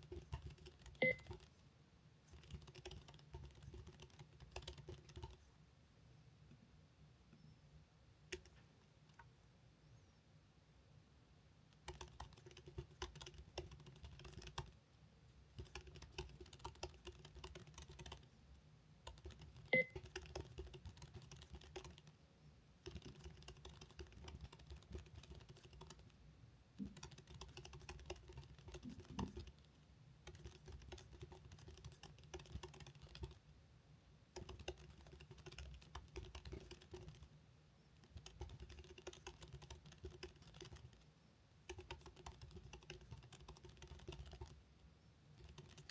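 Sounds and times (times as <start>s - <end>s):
fast typing on keyboard: 0.0s - 1.5s, 2.3s - 5.4s, 11.7s - 14.8s, 15.5s - 18.3s, 19.0s - 22.1s, 22.8s - 26.2s, 26.8s - 33.4s, 34.4s - 37.3s, 38.0s - 41.0s, 41.7s - 44.6s, 45.4s - 45.9s.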